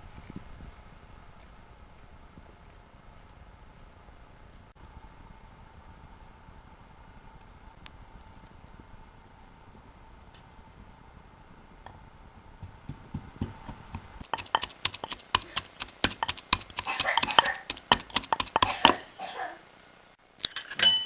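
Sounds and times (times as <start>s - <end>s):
root being crushed by hand: 12.7s - 19.0s.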